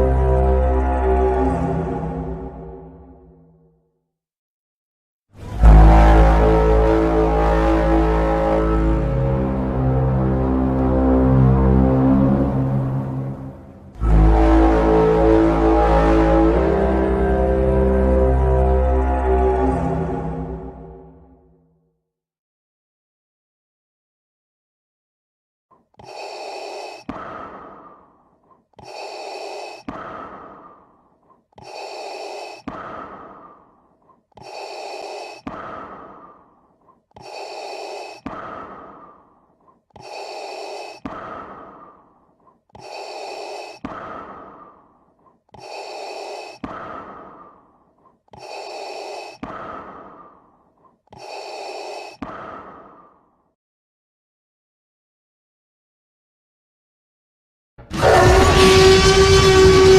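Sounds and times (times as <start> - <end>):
mechanical respirator breathing: 25.8 - 53.3.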